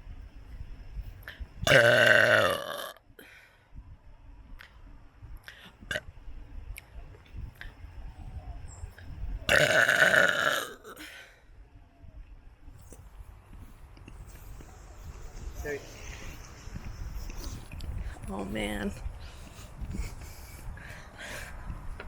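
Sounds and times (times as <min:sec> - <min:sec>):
person burping: 0:01.6 - 0:03.0, 0:09.5 - 0:11.0.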